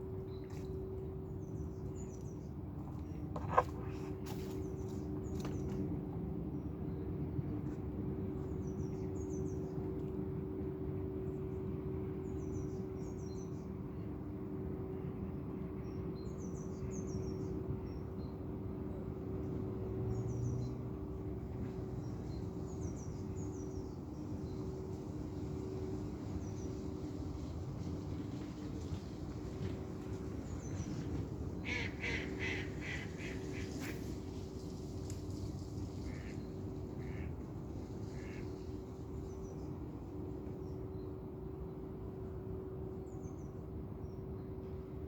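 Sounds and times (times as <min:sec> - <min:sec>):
steady low hum: 0:00.0 - 0:45.0
small birds chirping: 0:38.1 - 0:38.4.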